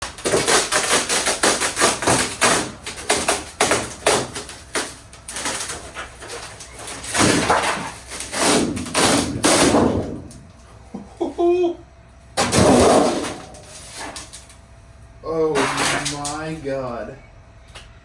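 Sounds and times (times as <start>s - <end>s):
sharp knocks and cracks: 0.0s - 10.6s, 12.4s - 14.5s, 15.5s - 16.6s
rough scraping or tearing: 0.1s - 10.1s, 12.5s - 14.4s.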